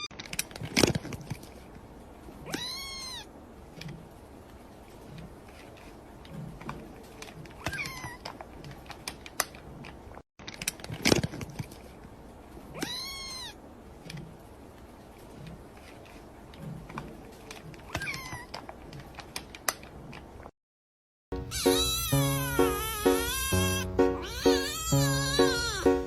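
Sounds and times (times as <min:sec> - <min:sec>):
cat meowing: 0:02.5 - 0:03.3, 0:12.8 - 0:13.6, 0:17.9 - 0:18.5, 0:21.5 - 0:26.0.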